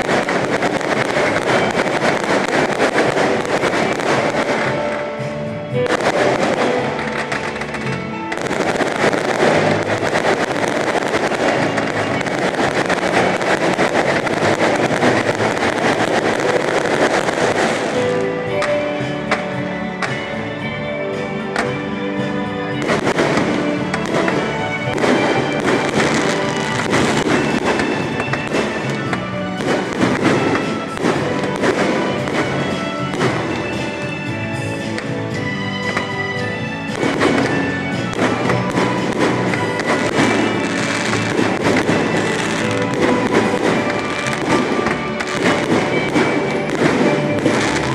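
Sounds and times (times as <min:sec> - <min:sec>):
fireworks crackling and popping: 0:00.0 - 0:47.9
music: 0:00.0 - 0:47.9.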